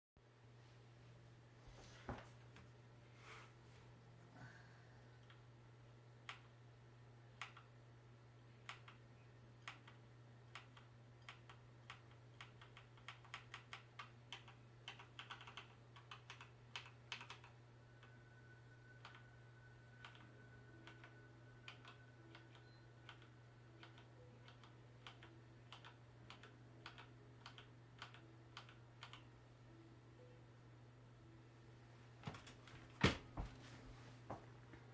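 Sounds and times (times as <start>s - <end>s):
computer keyboard keys clicking: 7.4s - 7.7s, 8.6s - 9.0s, 9.6s - 17.6s, 20.0s - 29.2s.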